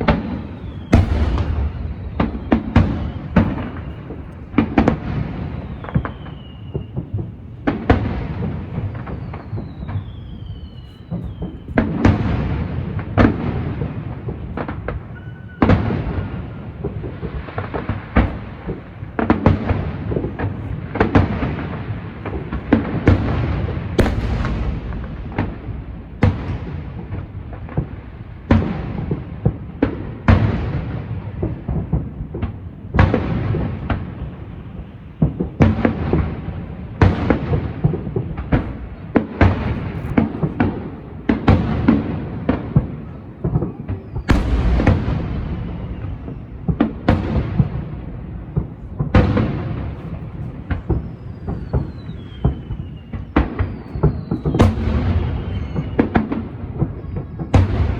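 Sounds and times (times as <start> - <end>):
falling firework whistle: 0.0 - 7.4, 8.8 - 12.5, 14.9 - 16.9, 23.1 - 27.2, 43.6 - 57.9
fireworks booming: 0.0 - 57.9.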